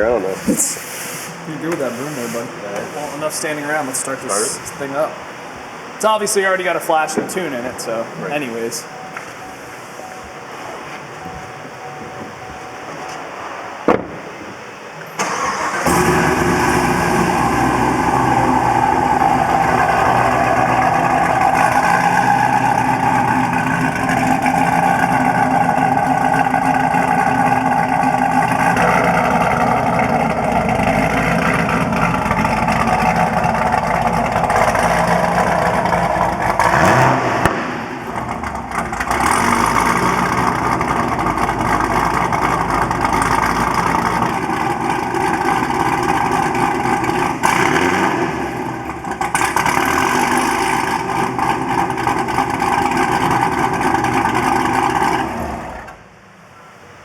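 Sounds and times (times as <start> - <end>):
car engine starting and idling: 0.0 - 57.0
car engine revving: 15.2 - 56.1.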